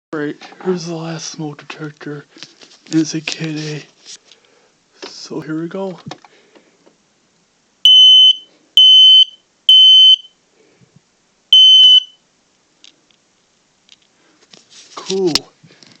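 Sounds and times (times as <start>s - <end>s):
smoke alarm beeps: 7.9s - 10.4s, 11.5s - 12.2s.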